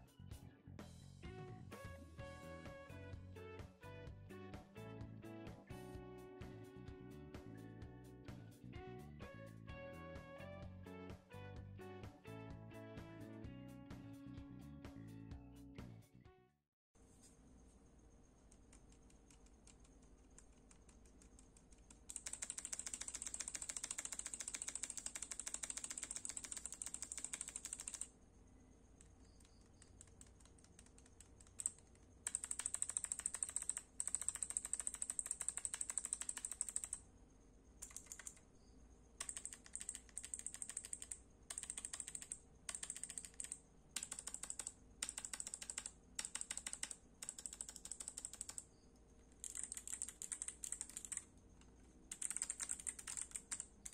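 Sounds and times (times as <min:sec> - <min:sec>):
clicky mechanical keyboard typing: 0:18.5 - 0:28.1, 0:29.0 - 0:37.1, 0:37.8 - 0:38.5, 0:39.2 - 0:48.7, 0:49.3 - 0:53.9.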